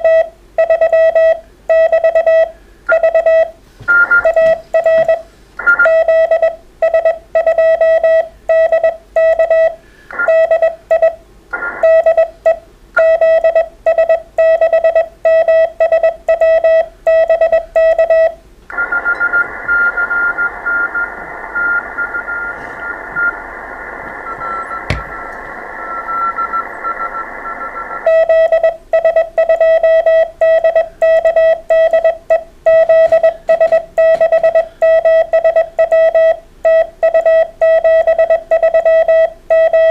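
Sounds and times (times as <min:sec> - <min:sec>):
morse code tone: 0:00.0 - 0:09.7, 0:24.2 - 0:39.9
faint morse signal: 0:00.0 - 0:11.2, 0:11.8 - 0:39.9
radio band hiss: 0:19.4 - 0:28.0.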